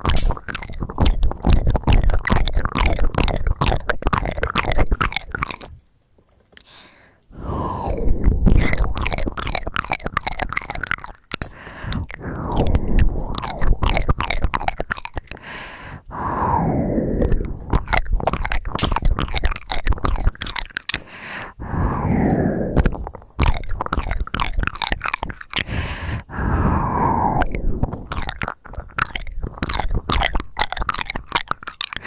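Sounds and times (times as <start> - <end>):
wet mouth clicks and smacks: 0.0 - 5.8, 6.5 - 32.0
breathy exhale: 6.6 - 8.4, 11.5 - 13.2, 15.4 - 17.5, 21.0 - 22.8, 25.6 - 27.9.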